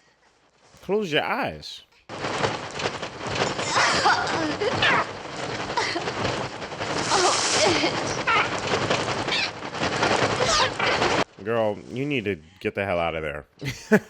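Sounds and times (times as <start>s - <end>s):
rapid wing-flapping: 2.1s - 11.3s.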